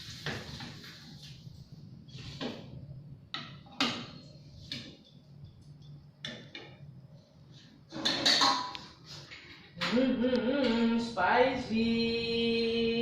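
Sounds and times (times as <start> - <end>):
cookware clattering: 7.9 - 8.8
cookware knocks and clinks: 7.9 - 8.8.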